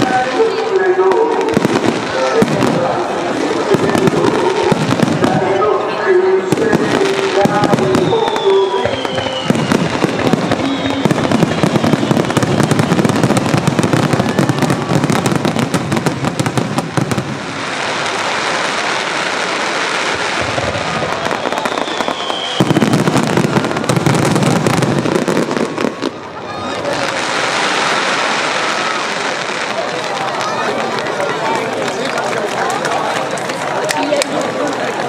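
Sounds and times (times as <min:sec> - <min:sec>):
fireworks bursts and bangs: 0:00.0 - 0:35.0
fireworks crackling hiss: 0:06.4 - 0:31.2.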